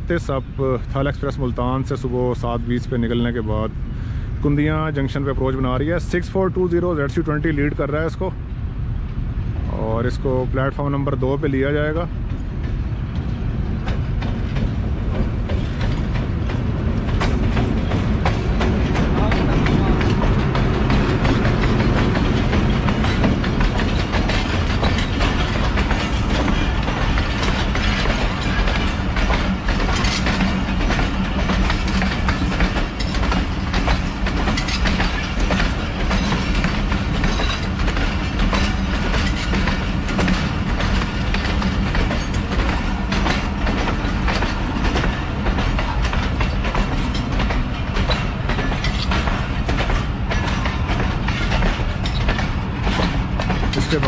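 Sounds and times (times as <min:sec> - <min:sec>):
wheels clicking over rail joints: 0:10.8 - 0:54.0.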